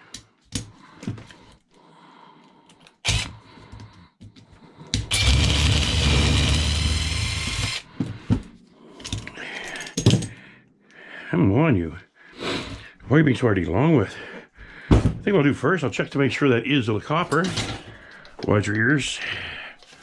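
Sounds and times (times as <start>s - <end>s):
small power tool motor: 3.0s - 3.3s, 5.1s - 7.8s.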